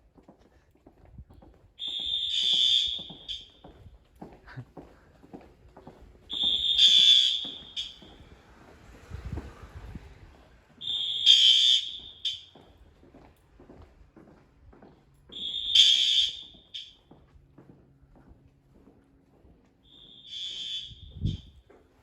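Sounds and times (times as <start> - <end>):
fire alarm horn blasts: 1.8 - 3.8, 6.3 - 8.2, 10.8 - 12.8, 15.3 - 17.1, 19.8 - 21.6.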